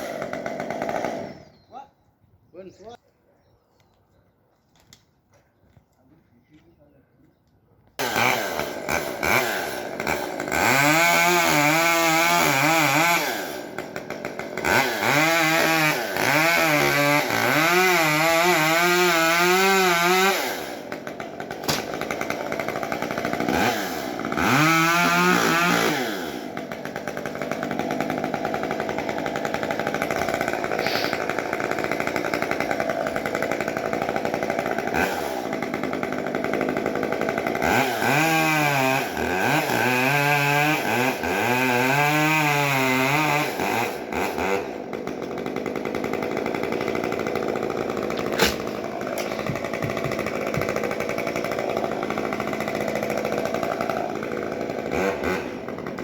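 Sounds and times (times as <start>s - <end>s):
chainsaw revving: 0.0s - 1.5s, 8.0s - 56.0s.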